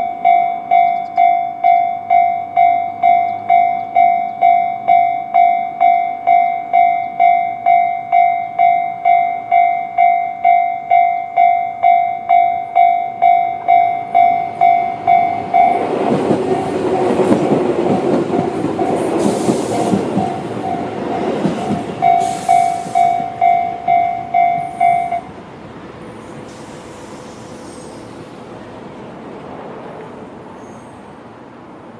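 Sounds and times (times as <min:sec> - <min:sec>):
level crossing warning bell: 0:00.0 - 0:25.4
rail clicks: 0:00.0 - 0:30.7
train wheel rumble: 0:00.0 - 0:31.9.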